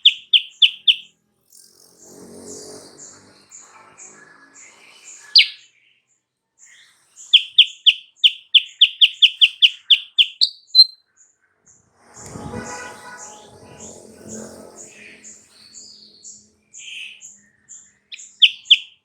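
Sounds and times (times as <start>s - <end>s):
faint high chirps: 0.0s - 1.1s, 5.4s - 5.9s, 6.7s - 11.2s, 16.8s - 19.0s
songbird singing: 0.0s - 1.1s, 3.0s - 11.4s, 12.3s - 19.0s.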